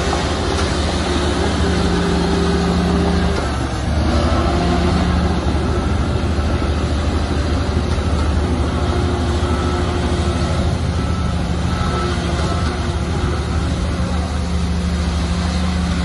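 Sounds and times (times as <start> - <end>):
bulldozer diesel engine drone: 0.0 - 16.0.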